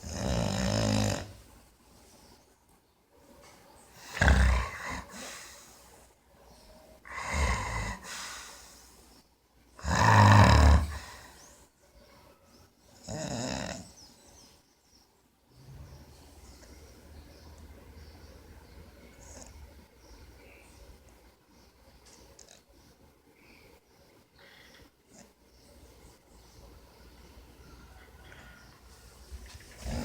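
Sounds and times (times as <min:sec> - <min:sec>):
loud rasping snoring: 0:00.0 - 0:01.4, 0:04.0 - 0:05.2, 0:07.1 - 0:08.1, 0:09.8 - 0:11.3, 0:13.0 - 0:14.0, 0:29.8 - 0:30.0
quiet breathing: 0:00.0 - 0:09.8, 0:10.6 - 0:13.0, 0:18.2 - 0:30.0.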